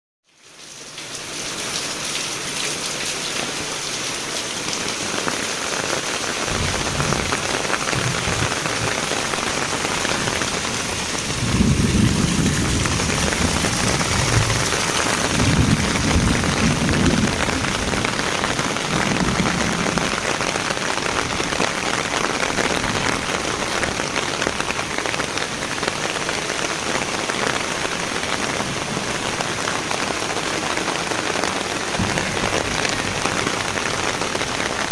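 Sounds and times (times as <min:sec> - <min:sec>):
heavy rain pouring: 0:00.2 - 0:34.9.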